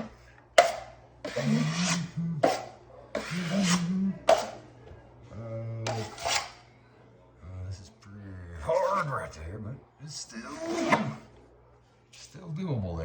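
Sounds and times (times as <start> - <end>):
drywall knife scraping compound: 0.0 - 4.6, 5.8 - 6.6, 10.4 - 11.2.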